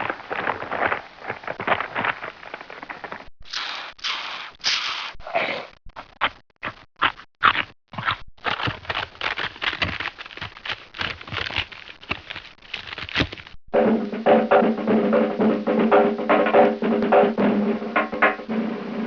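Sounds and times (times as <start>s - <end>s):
rapid clicks and crackles: 0.0s - 3.8s, 8.4s - 13.6s.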